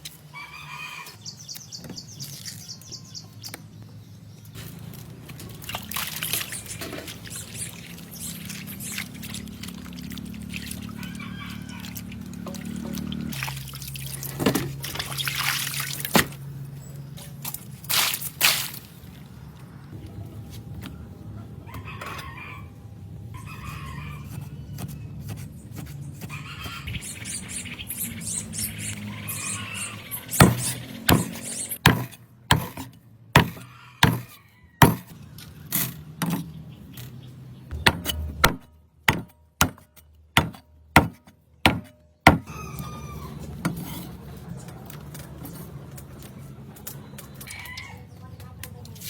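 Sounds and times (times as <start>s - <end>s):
knife chopping on wooden board: 24.3s - 26.3s, 30.4s - 35.1s, 37.7s - 42.5s.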